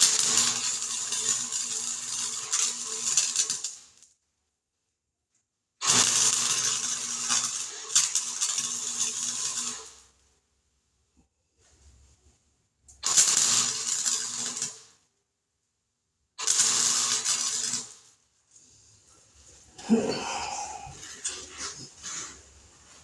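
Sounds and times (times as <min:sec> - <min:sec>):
arc welding crackling sizzle: 0:00.0 - 0:04.1, 0:05.8 - 0:10.2, 0:13.0 - 0:15.0, 0:16.4 - 0:18.2, 0:20.4 - 0:23.0.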